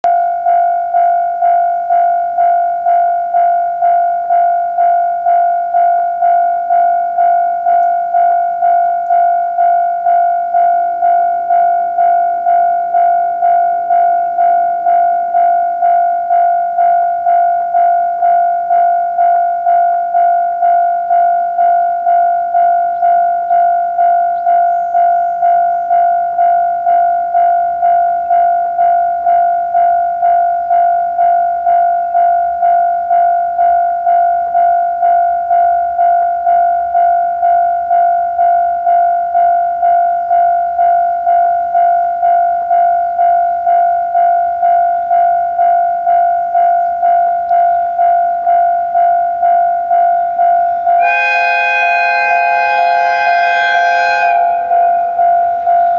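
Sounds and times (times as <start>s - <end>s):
level crossing warning bell: 0.0s - 55.9s
level crossing bell ringing: 49.2s - 55.9s.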